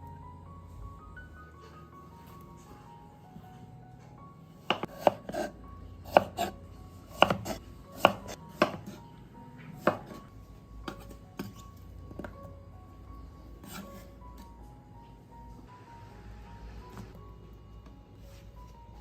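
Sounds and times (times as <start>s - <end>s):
knife chopping on cutting board: 4.7s - 5.5s, 6.1s - 9.0s, 9.8s - 10.2s.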